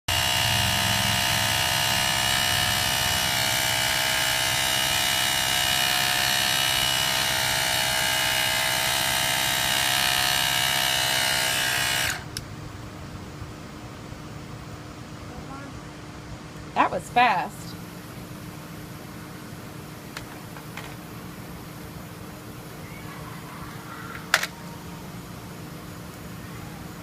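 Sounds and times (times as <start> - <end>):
air compressor buzzing: 0.1 - 12.5.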